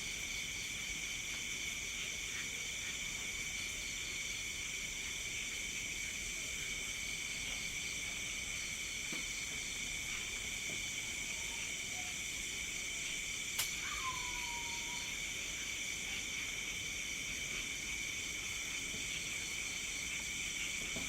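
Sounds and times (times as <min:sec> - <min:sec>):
crickets trilling: 0:00.0 - 0:21.0
sharp click: 0:13.6 - 0:13.8.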